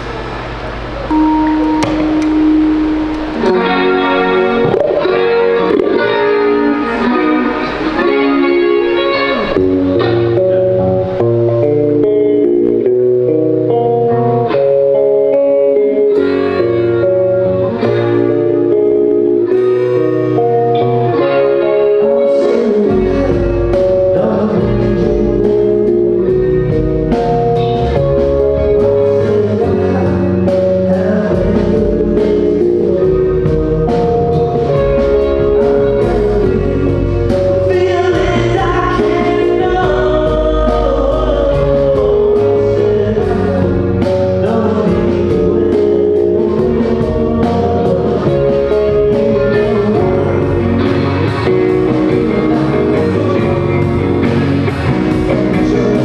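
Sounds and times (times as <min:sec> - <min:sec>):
live band playing: 0:00.0 - 0:56.0
drum hits: 0:01.1 - 0:03.7
person singing: 0:01.1 - 0:56.0.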